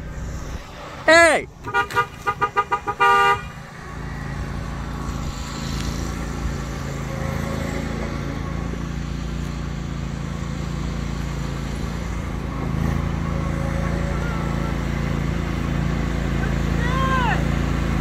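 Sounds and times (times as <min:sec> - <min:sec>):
engine running at low revs: 0:00.0 - 0:18.0
car horn honk: 0:01.6 - 0:03.8.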